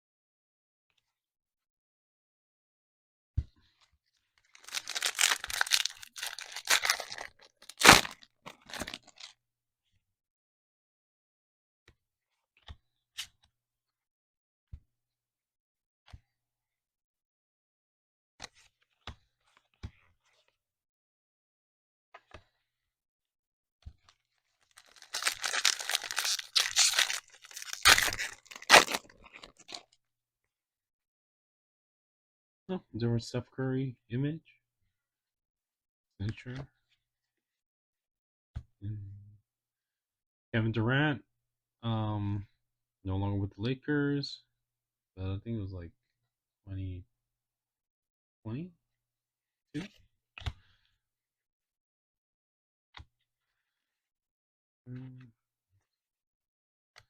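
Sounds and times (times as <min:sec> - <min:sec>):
wrapper tearing and crinkling: 0:04.5 - 0:09.3, 0:24.6 - 0:29.8.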